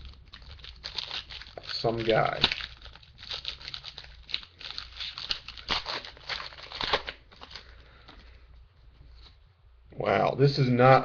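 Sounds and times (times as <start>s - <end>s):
wrapper being torn and crinkled: 0.0s - 7.8s.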